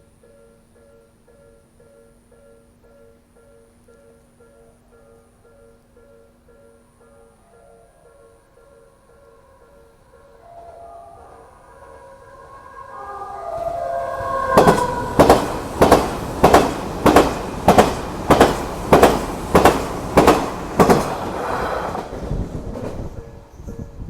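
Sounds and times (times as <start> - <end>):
electric train passing: 0.0 - 24.0
wheels clacking over rail joints: 13.5 - 23.2.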